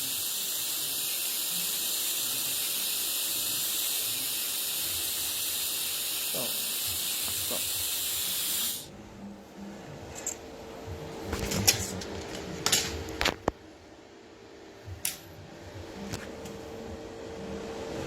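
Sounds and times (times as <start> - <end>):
welding arc hissing: 0.0 - 8.9.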